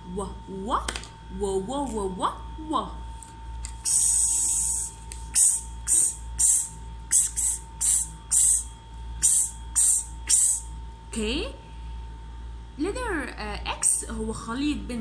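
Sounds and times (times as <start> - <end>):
woman making hissed ks sounds: 3.7 - 10.7.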